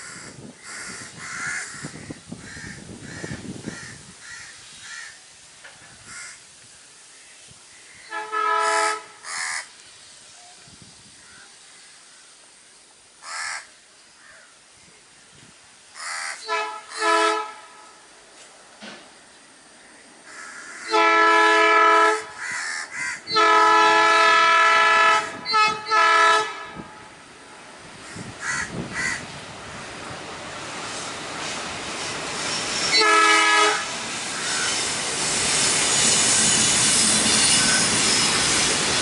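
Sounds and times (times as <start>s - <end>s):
crows cawing: 0.0s - 5.2s, 6.0s - 6.4s, 8.6s - 9.7s, 13.2s - 14.5s, 16.0s - 17.1s, 19.8s - 21.0s, 22.4s - 23.4s, 28.0s - 29.2s
locomotive horn honking: 8.1s - 9.2s, 16.4s - 18.0s, 20.9s - 22.4s, 23.3s - 27.2s, 32.6s - 35.0s.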